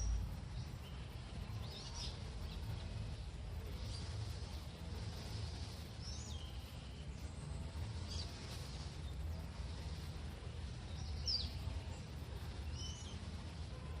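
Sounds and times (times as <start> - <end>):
low background rumble: 0.0 - 14.0
songbird high calls: 10.8 - 13.4.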